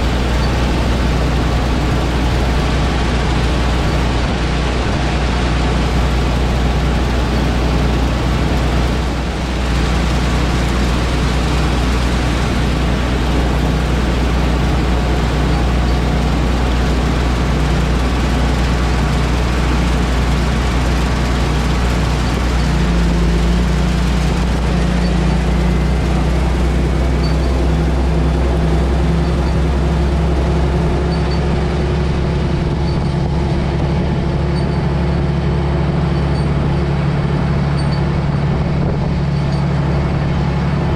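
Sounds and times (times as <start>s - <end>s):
diesel engine under load: 0.0s - 40.9s.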